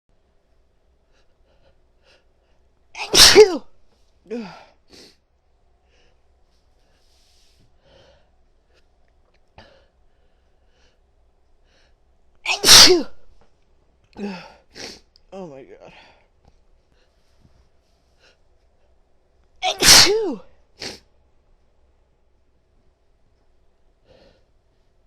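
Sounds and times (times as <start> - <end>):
woman sneezing: 3.0 - 3.7, 12.5 - 13.2, 19.6 - 21.0.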